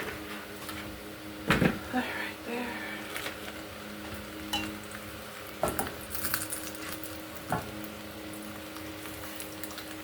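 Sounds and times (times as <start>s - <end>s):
steady low hum: 0.0s - 10.0s
utensils clinking on dishes: 4.5s - 4.8s.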